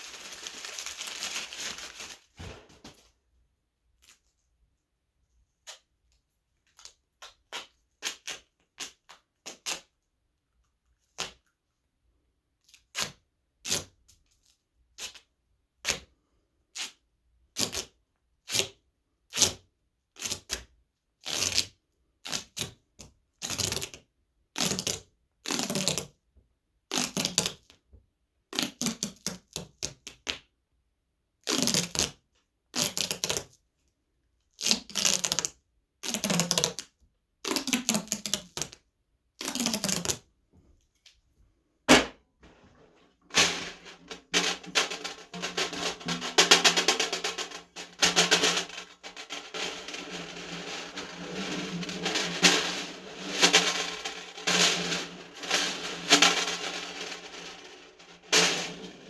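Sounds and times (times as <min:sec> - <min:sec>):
objects clicking and clattering: 0:41.9 - 0:59.0.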